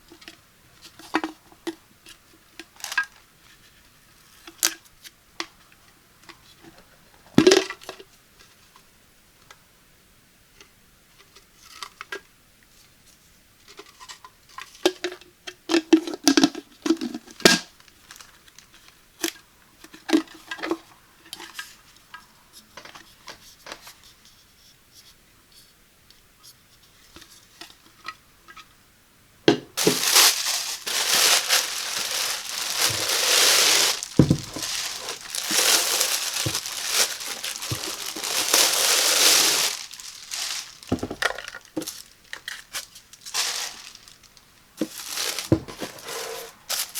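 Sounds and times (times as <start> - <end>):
plastic wrapping crinkling: 2.7 - 3.1, 29.8 - 46.9
packaging knocks and clatters: 29.8 - 46.9.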